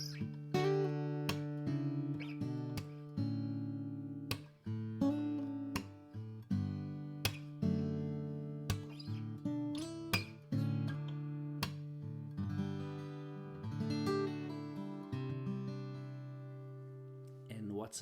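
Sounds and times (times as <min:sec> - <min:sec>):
acoustic guitar chords ringing: 0:00.0 - 0:17.2.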